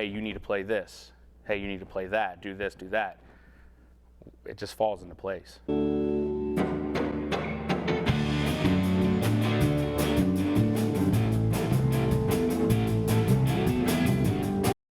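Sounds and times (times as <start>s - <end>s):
rock band playing: 5.7s - 14.8s.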